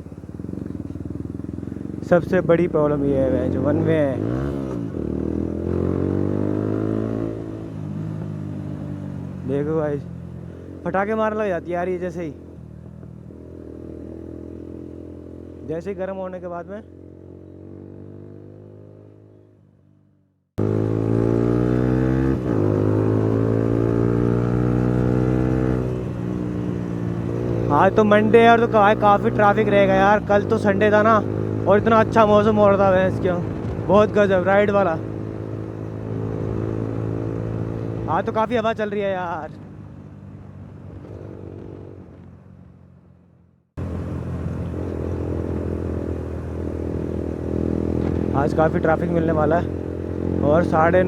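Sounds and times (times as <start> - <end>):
motorcycle engine running: 0.0 - 51.0.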